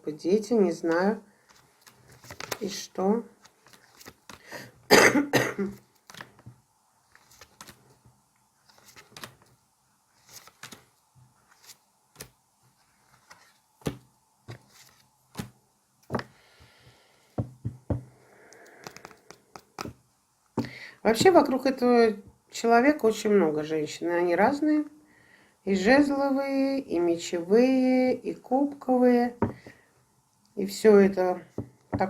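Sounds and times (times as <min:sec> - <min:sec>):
person coughing: 0:04.6 - 0:05.8
cards clicking and tapping on table: 0:15.3 - 0:16.3, 0:17.4 - 0:18.1, 0:18.7 - 0:20.0, 0:29.4 - 0:29.7.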